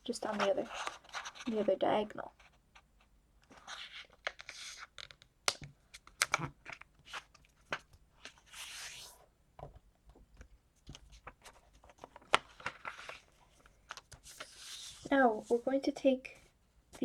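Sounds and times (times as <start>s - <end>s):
paper sliding rub: 8.4s - 9.2s, 14.2s - 15.7s
paper crackling as folded: 10.9s - 15.2s.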